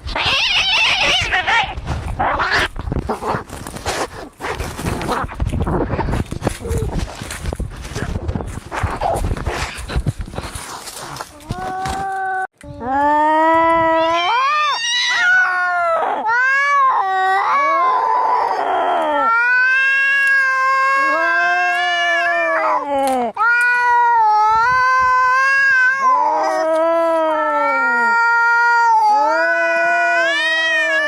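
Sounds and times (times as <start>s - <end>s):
cats yowling: 0.1s - 2.7s, 13.8s - 22.8s, 23.4s - 31.0s.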